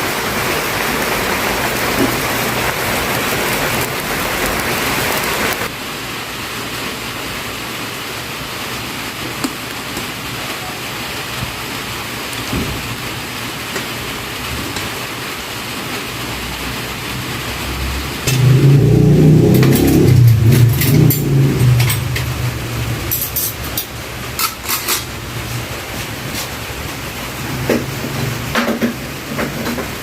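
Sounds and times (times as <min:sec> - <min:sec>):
soup boiling and bubbling: 0:00.0 - 0:30.0.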